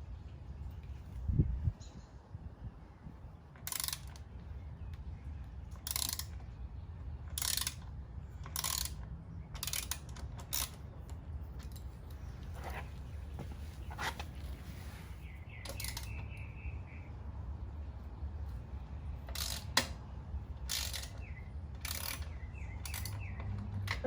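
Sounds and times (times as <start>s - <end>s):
ratchet wrench clicking: 3.6s - 4.2s, 5.7s - 6.4s, 7.3s - 9.0s, 9.6s - 10.8s, 15.7s - 16.2s, 19.3s - 20.0s, 20.6s - 24.0s.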